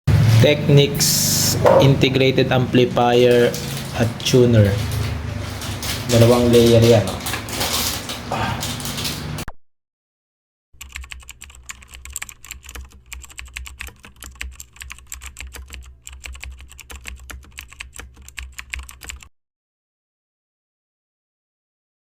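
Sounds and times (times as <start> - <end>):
keyboard typing clicks: 10.8 - 19.3.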